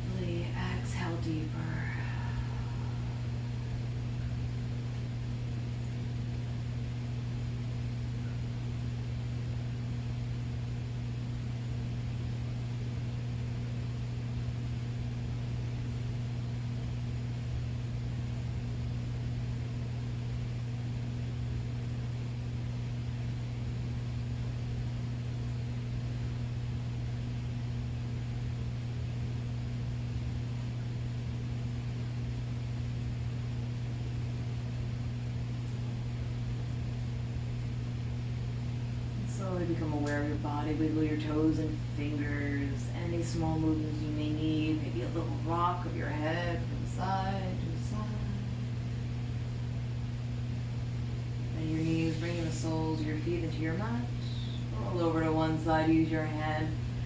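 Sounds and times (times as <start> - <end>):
low hum: 0.0 - 57.0
even hiss: 51.5 - 53.6.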